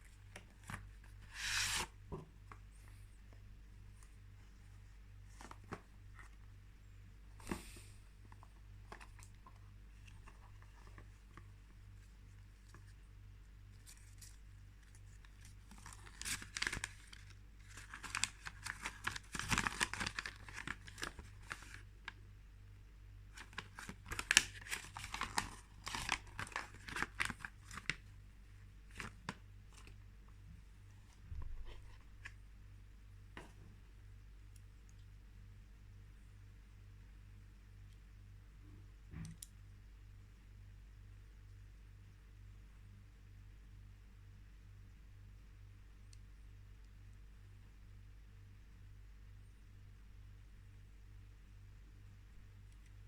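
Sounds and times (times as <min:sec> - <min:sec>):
packaging tearing and crinkling: 0:15.4 - 0:21.8, 0:23.4 - 0:28.0.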